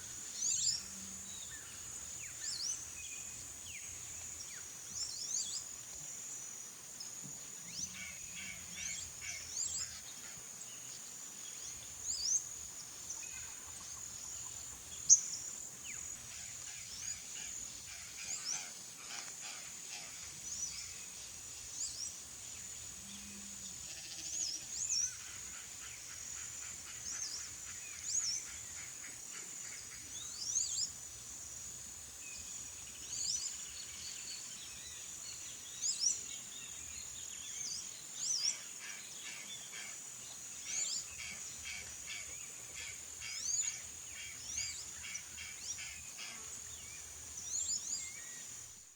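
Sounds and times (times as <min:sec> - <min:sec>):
high insect buzz: 0:15.8 - 0:27.0.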